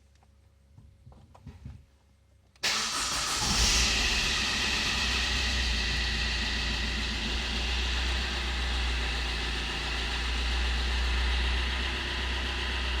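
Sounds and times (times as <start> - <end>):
diesel car engine idling: 2.8 - 13.0.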